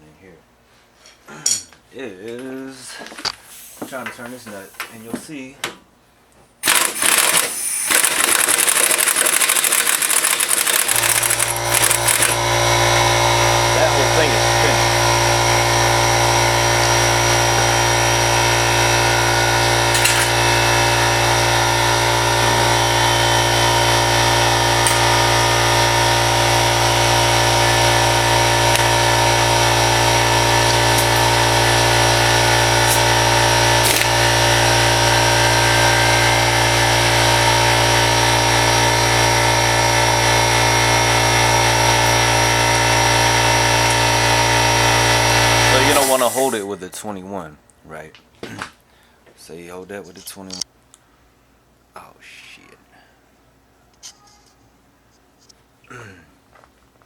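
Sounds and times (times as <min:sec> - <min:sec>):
power tool running: 0:06.6 - 0:46.6.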